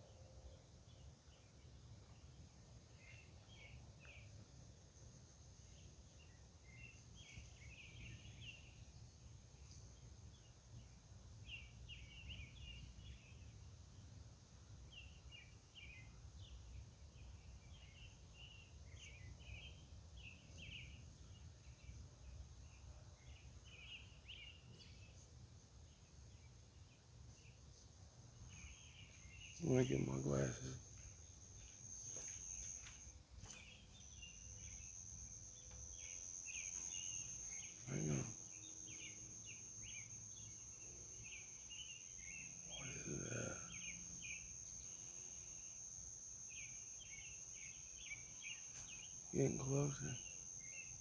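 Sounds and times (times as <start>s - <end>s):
bird chirps: 28.4s - 45.7s, 46.4s - 51.0s.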